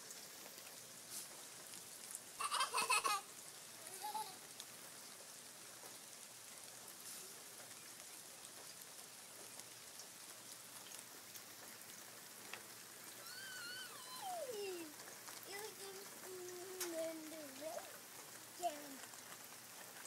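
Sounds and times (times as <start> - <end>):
light rain falling: 0.0 - 20.0
raindrops ticking on surfaces: 0.0 - 20.0
high voice: 13.2 - 18.0, 18.6 - 19.0.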